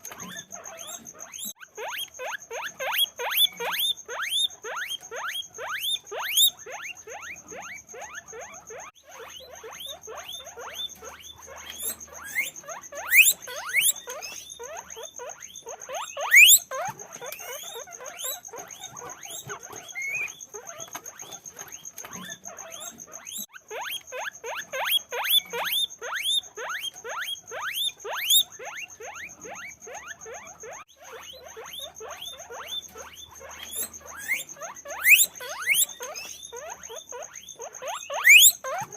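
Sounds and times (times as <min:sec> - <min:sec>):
guinea pigs squeaking: 0:00.0 - 0:38.9.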